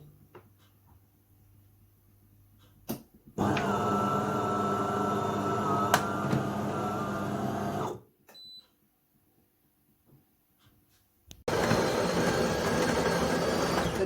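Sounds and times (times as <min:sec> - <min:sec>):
coffee grinder running: 0:03.4 - 0:08.0, 0:11.5 - 0:14.0.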